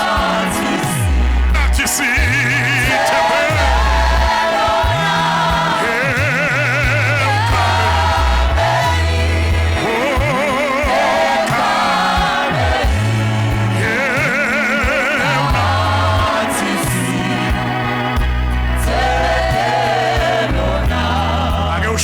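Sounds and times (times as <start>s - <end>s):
gospel singing with vibrato: 0.0s - 22.0s
moving bass line: 0.0s - 22.0s.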